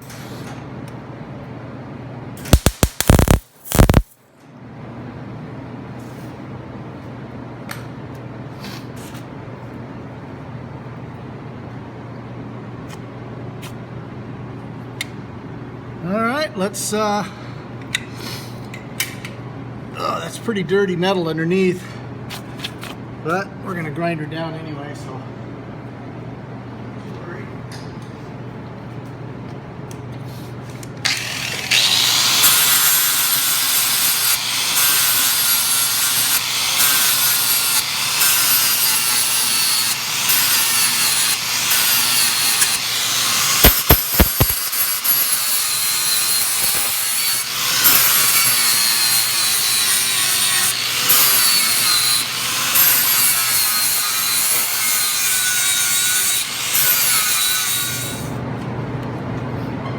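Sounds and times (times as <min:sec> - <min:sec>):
grinder grinding metal: 0:02.4 - 0:04.2, 0:31.1 - 0:58.3
sharp clicks: 0:02.4 - 0:04.2.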